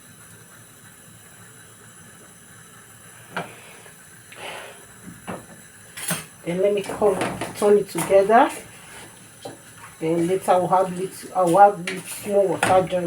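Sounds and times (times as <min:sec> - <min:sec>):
gas stove burner hissing: 0:00.0 - 0:13.0.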